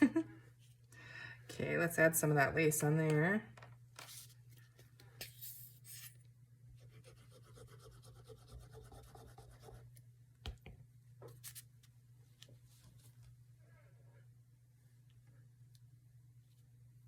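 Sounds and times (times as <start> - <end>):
paper rustling and rubbing: 4.0 - 4.4, 11.3 - 11.7.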